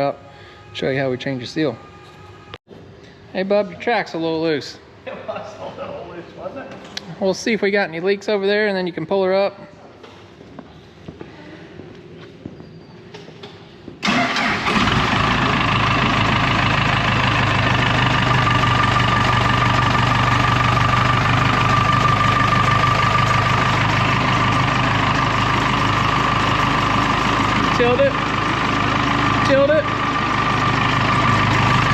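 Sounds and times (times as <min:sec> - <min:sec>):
diesel engine starting and idling: 0:14.0 - 0:31.9.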